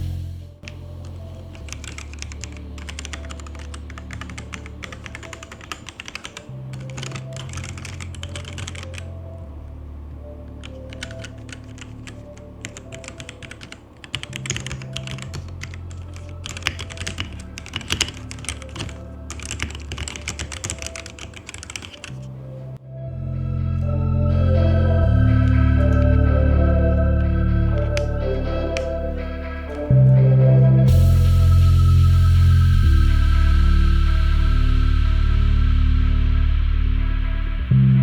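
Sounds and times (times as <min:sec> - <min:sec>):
mechanical keyboard key clacks: 0:10.9 - 0:22.2.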